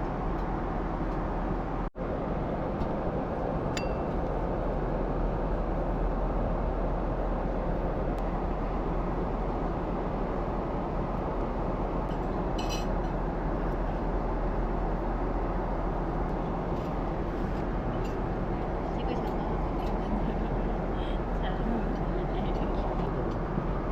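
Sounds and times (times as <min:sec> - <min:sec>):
jet airliner cabin noise: 0:00.0 - 0:23.9.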